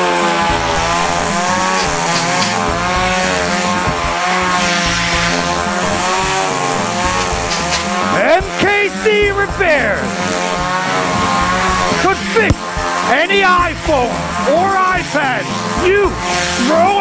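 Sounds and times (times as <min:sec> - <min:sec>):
chainsaw engine running: 0:00.0 - 0:17.0.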